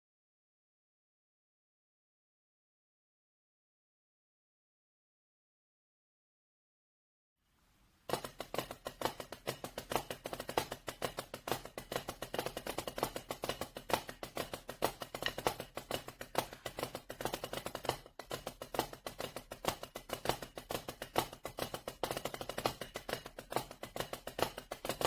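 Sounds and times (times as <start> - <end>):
drumsticks tapping practice pad: 8.1 - 25.0.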